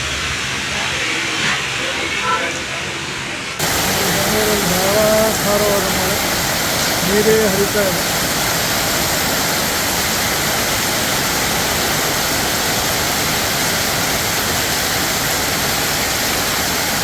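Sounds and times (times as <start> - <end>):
heavy rain: 0.0 - 17.0
rushing floodwater: 3.6 - 17.0.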